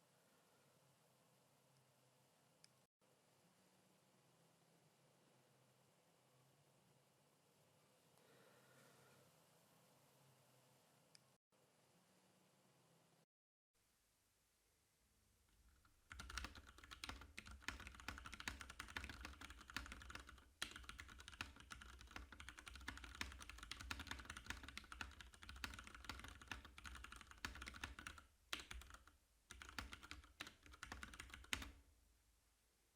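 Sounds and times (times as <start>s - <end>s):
mechanical keyboard typing: 15.7s - 31.8s.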